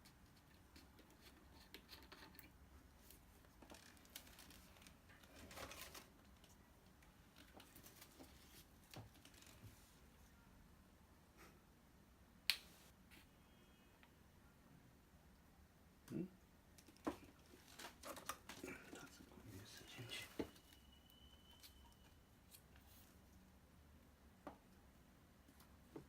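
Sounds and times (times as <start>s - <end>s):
plastic parts clicking and rustling: 3.6s - 6.5s, 16.8s - 19.1s.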